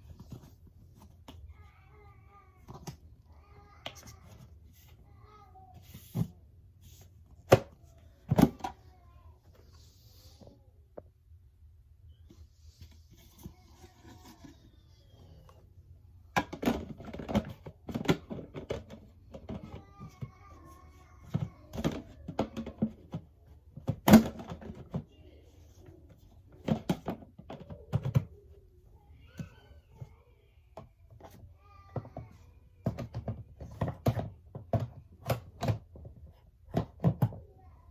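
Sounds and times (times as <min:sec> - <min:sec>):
objects knocking and clunking: 0:00.0 - 0:01.6, 0:07.3 - 0:08.9, 0:16.3 - 0:25.1, 0:26.1 - 0:28.4, 0:30.8 - 0:37.6.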